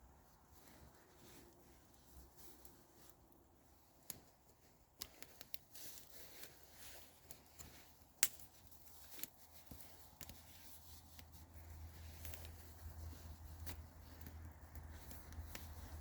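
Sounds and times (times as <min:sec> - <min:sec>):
campfire crackling: 0:00.0 - 0:16.0
sharp pops and clicks: 0:05.0 - 0:05.6.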